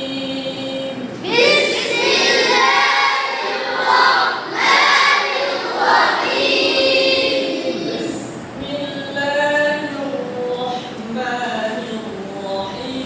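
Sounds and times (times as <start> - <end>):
single voice reciting: 0.0 - 13.0
group chanting in unison: 1.2 - 8.4.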